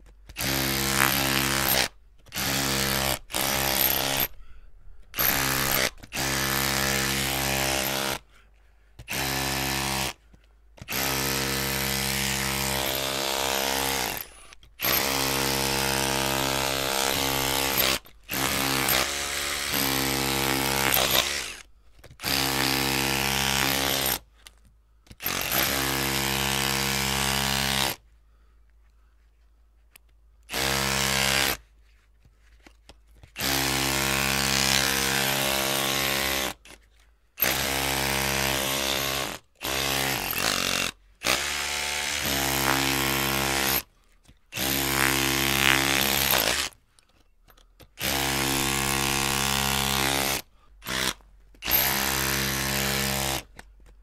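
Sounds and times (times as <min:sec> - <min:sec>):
electric drill motor running: 0:00.4 - 0:04.3, 0:05.2 - 0:08.2, 0:10.9 - 0:21.6, 0:48.0 - 0:53.4.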